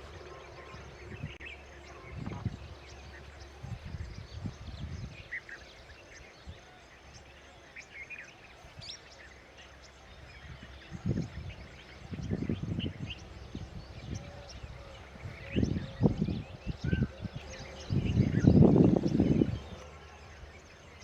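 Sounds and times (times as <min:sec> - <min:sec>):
birds chirping: 0:00.0 - 0:21.0.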